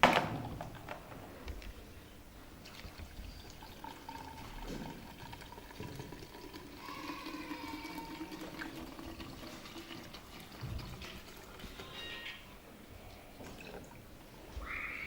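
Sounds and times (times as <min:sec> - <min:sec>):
water pouring into container: 0:02.6 - 0:12.0.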